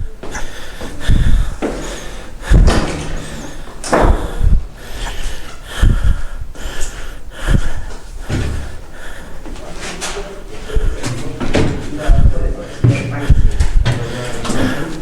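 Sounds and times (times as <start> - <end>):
breathing close to microphone: 0.0 - 15.0
heavy thumps on boards: 2.5 - 3.3, 3.9 - 4.5.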